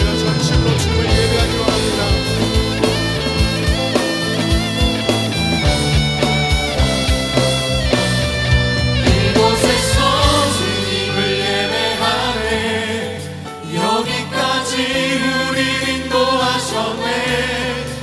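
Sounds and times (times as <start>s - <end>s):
group of voices singing: 0.0s - 5.4s, 9.0s - 18.0s
backing band playing: 0.0s - 18.0s.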